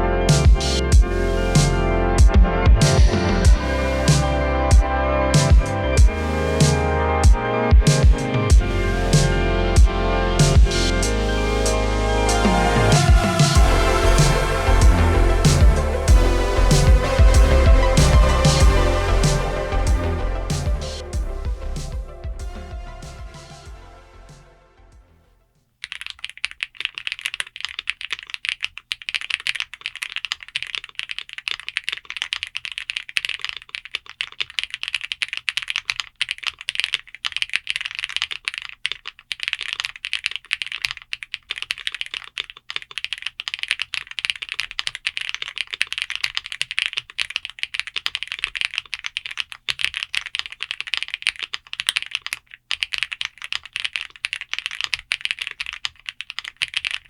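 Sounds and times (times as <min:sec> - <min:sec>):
mechanical keyboard typing: 0:25.8 - 0:57.0.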